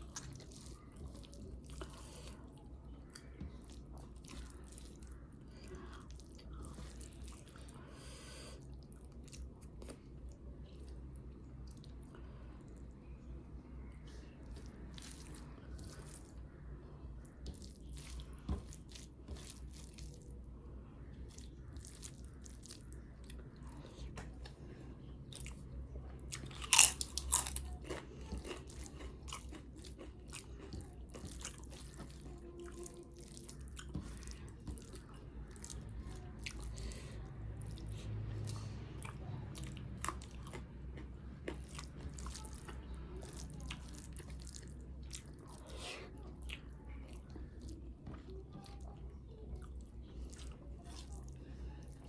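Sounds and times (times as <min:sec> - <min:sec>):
chewing and smacking: 0:00.0 - 0:07.9, 0:08.6 - 0:13.0, 0:13.9 - 0:16.6, 0:17.2 - 0:20.5, 0:21.1 - 0:52.0.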